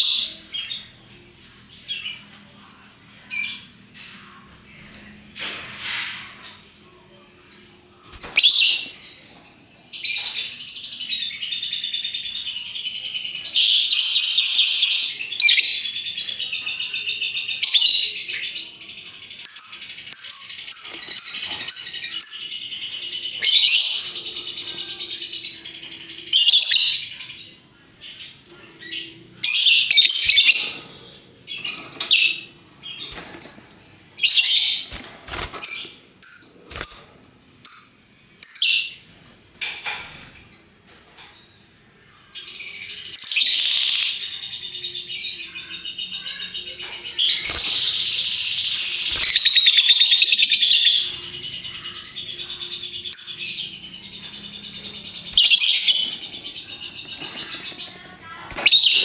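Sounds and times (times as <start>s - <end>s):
lovebird chirping: 29.4s - 30.8s, 42.7s - 57.4s
lovebird chattering trill: 43.2s - 44.3s, 47.2s - 57.6s.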